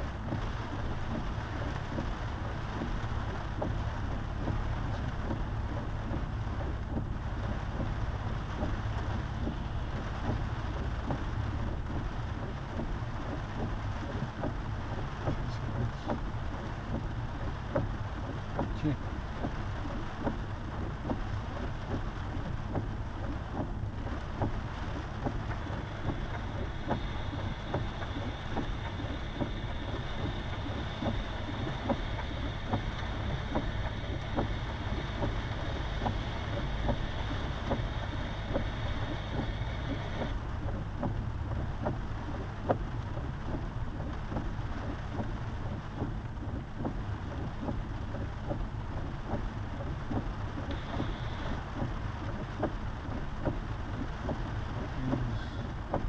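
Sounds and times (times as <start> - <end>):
car engine and tyres rumbling: 0.0 - 56.0
high steady hum: 21.2 - 56.0
ticks: 25.2 - 56.0.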